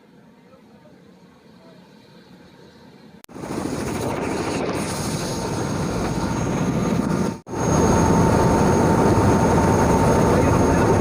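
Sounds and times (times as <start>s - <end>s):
helicopter engine and rotor: 3.3s - 11.0s.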